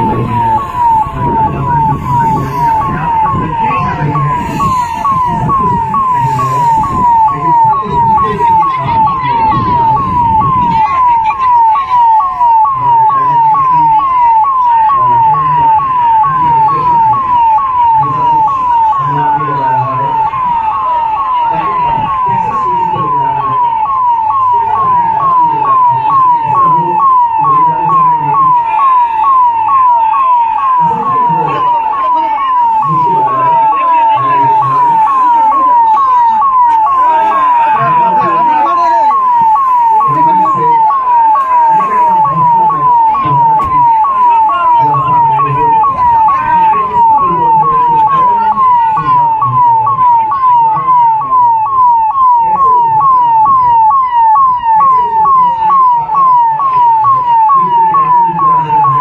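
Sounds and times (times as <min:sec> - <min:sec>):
siren yelping: 0:00.0 - 0:59.0.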